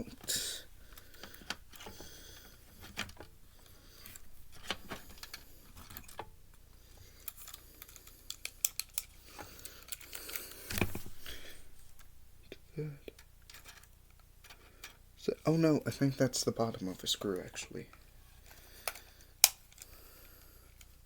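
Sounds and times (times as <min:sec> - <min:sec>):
screwdriver clicking and scraping: 0:07.2 - 0:11.2.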